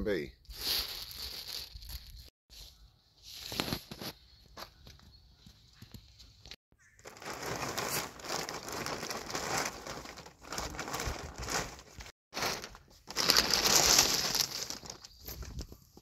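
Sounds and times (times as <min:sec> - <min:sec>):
plastic tarp crinkling: 0:00.5 - 0:02.3, 0:07.0 - 0:15.8.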